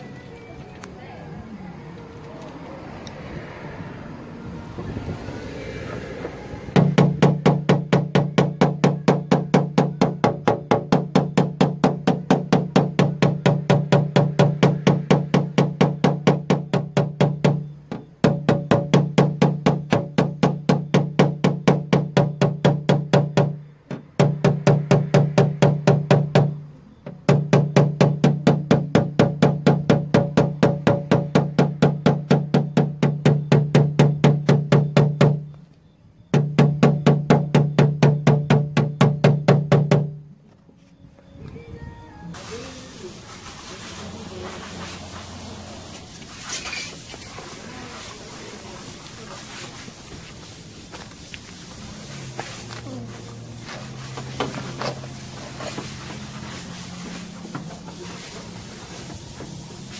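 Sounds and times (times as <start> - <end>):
hammer tapping on sheet metal: 6.8 - 35.5, 36.3 - 40.2.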